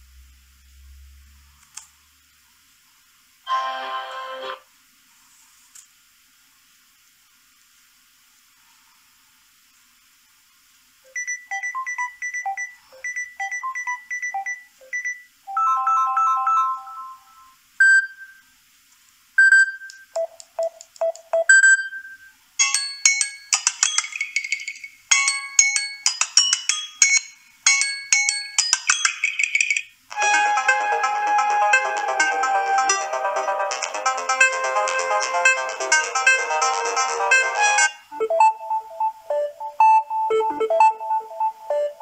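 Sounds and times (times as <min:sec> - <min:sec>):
phone ringtones and chimes: 0:11.1 - 0:18.3, 0:21.5 - 0:42.0.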